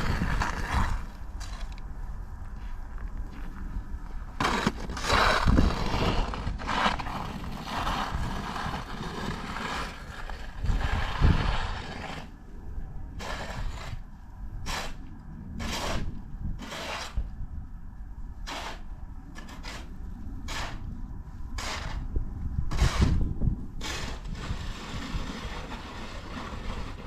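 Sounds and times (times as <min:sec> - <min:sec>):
crunching in snow: 0:00.0 - 0:01.8, 0:02.4 - 0:12.4
wind buffeting microphone: 0:00.0 - 0:27.0.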